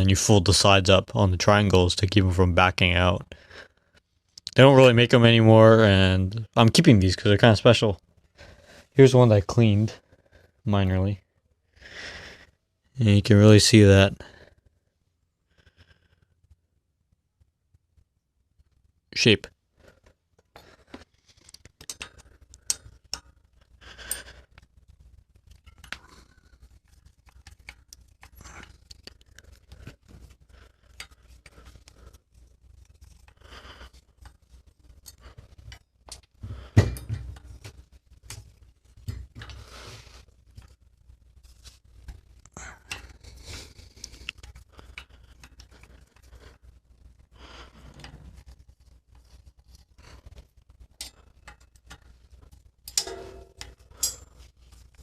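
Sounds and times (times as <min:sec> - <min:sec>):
hand tools clicking and scraping: 0:20.4 - 0:24.7, 0:25.4 - 0:40.8, 0:41.4 - 0:55.0.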